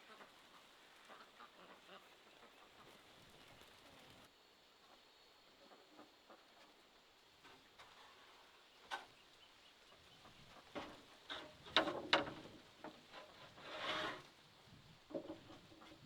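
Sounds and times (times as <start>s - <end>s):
scraping rustle: 7.4s - 9.1s, 10.2s - 16.0s.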